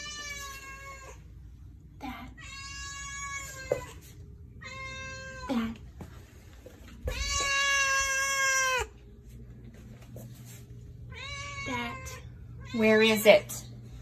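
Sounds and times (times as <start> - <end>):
cat meowing: 4.6 - 5.7, 7.0 - 8.9, 11.1 - 12.8.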